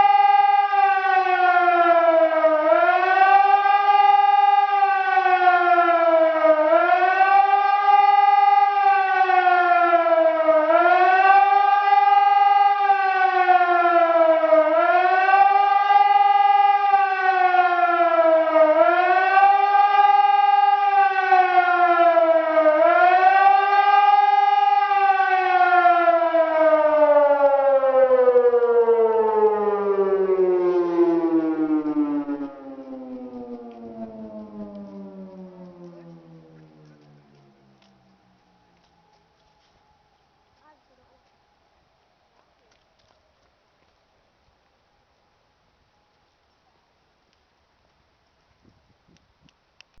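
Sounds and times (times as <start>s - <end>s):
electronic siren wailing: 0.0s - 39.2s.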